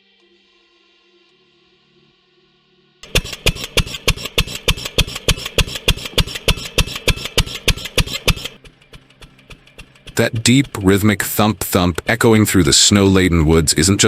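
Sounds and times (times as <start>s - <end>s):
engine thumping: 3.0s - 14.0s.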